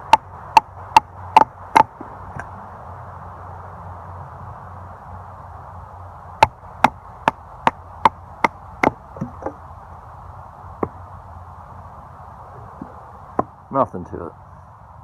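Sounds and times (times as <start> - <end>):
knife chopping into wood: 7.6 - 9.6.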